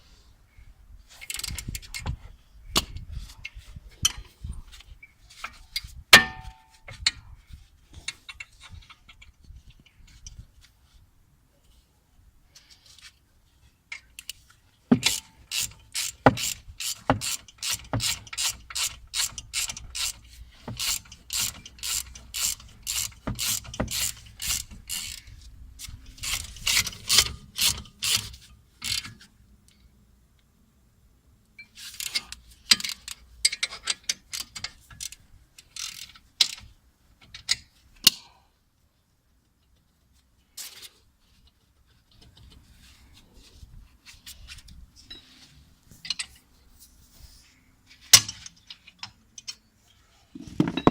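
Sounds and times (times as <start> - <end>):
ratchet wrench clicking: 15.0 - 29.1, 35.8 - 36.6.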